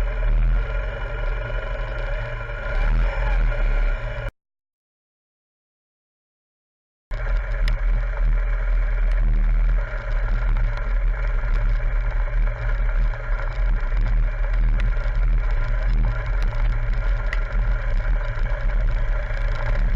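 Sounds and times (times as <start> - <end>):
motorcycle engine running: 0.0 - 4.3, 7.1 - 19.9
faint ticks: 7.2 - 19.9.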